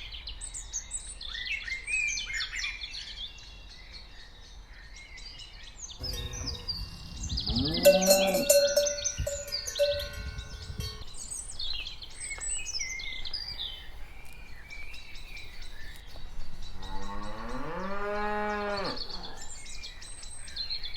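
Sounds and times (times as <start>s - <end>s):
small birds chirping: 0.0s - 20.9s
cow mooing: 6.0s - 10.2s, 16.9s - 19.5s.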